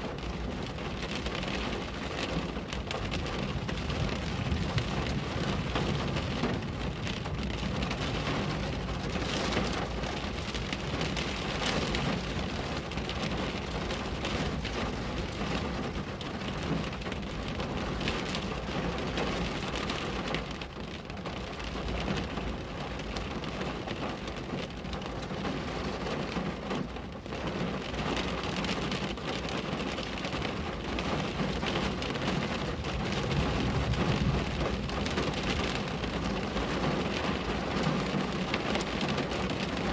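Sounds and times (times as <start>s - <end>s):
rain falling on a window: 0.0s - 39.9s
constant low rumble: 26.9s - 39.9s.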